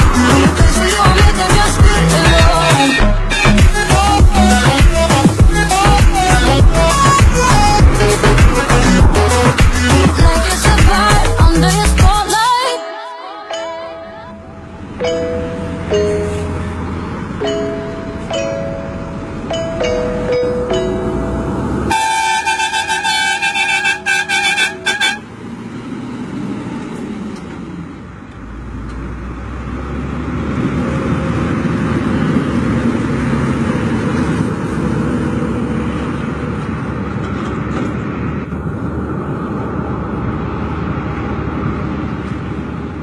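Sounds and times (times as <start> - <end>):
diesel truck engine rumbling: 0.0 - 12.6, 14.2 - 43.0
truck air horn: 21.9 - 25.3.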